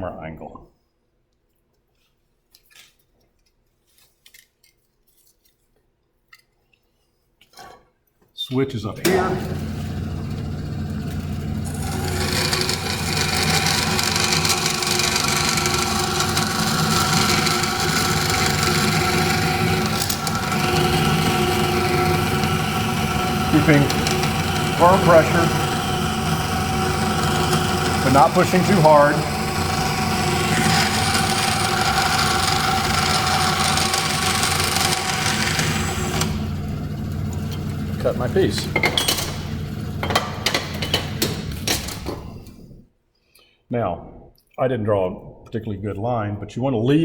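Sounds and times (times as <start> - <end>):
bandsaw cutting metal: 8.9 - 42.8
bandsaw motor hum: 8.9 - 42.8.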